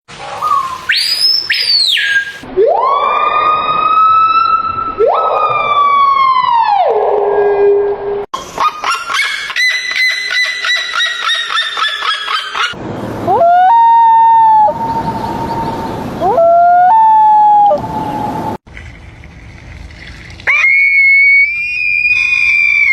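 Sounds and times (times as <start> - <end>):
bird siren-like calls: 0.4 - 6.2.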